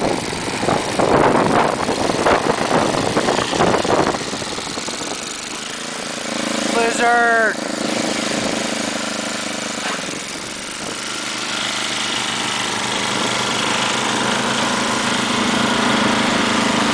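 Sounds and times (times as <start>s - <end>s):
snowblower engine running: 0.0s - 16.9s.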